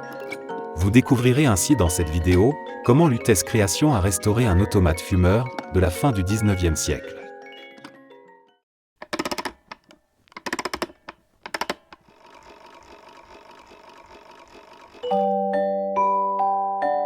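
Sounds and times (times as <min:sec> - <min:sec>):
rapid mechanical clicking: 0:09.0 - 0:15.1.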